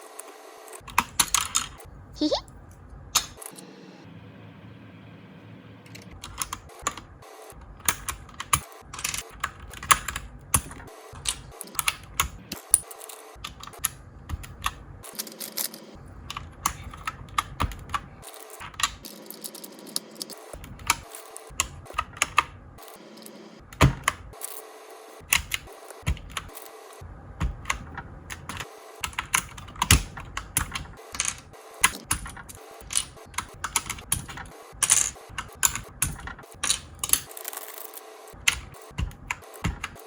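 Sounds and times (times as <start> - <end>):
keyboard key clicks: 38.5 - 40.0.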